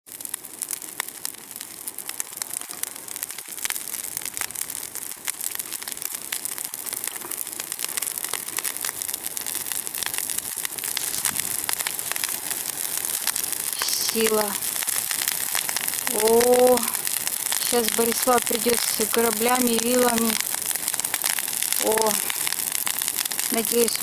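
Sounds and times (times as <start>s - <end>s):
bonfire crackling and popping: 0.0s - 24.0s.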